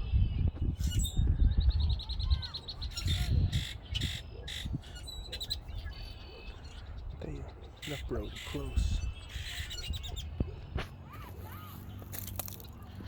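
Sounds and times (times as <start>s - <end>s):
birds chattering and squawking: 0.0s - 13.0s.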